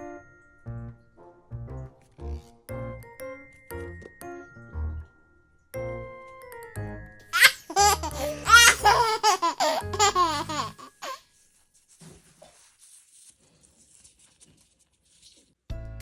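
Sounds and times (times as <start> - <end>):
high-pitched laughter: 7.4 - 11.2.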